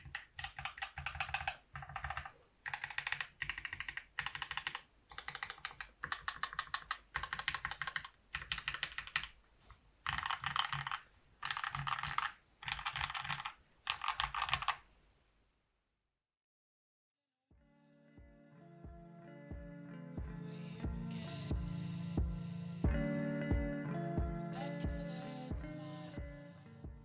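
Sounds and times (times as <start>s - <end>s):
mechanical keyboard typing: 0.0s - 9.4s, 10.0s - 14.8s.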